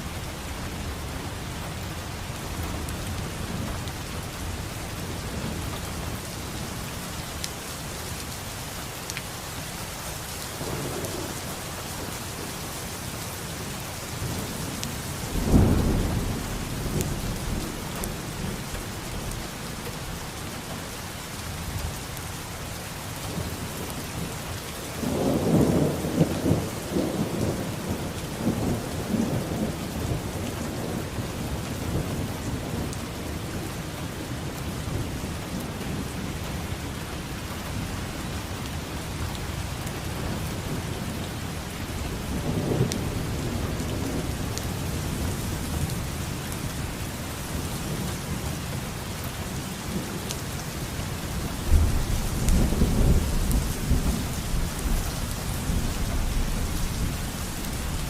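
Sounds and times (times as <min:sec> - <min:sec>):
steady rain: 0:00.0 - 0:58.0
thunder: 0:15.3 - 0:18.8, 0:51.6 - 0:57.9.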